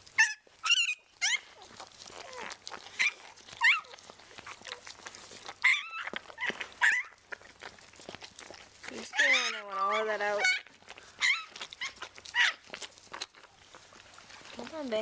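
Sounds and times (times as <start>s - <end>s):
puppy squealing: 0.1s - 7.2s, 9.0s - 12.8s.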